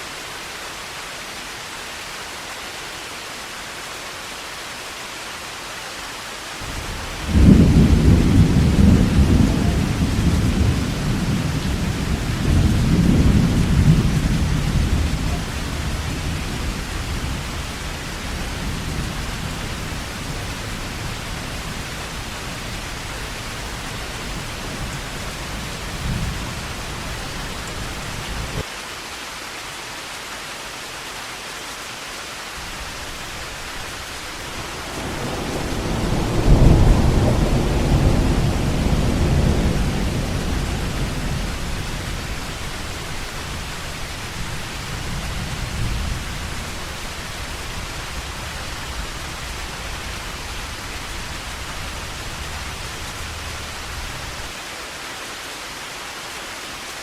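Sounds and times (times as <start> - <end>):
heavy rain falling: 0.0 - 57.0
thunder rolling: 6.6 - 28.6, 32.7 - 54.5.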